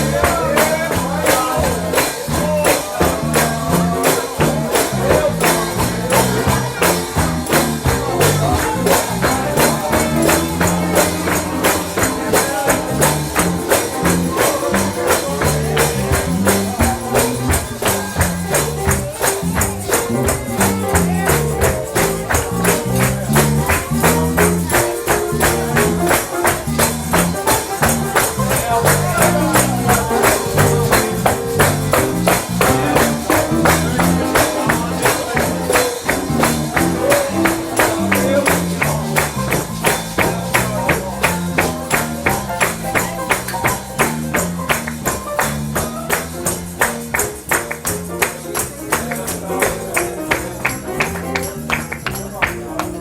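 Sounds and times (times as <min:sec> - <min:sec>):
singing voices: 0:00.0 - 0:53.0
tambourine beat: 0:00.0 - 0:53.0
upbeat gospel music: 0:00.0 - 0:53.0.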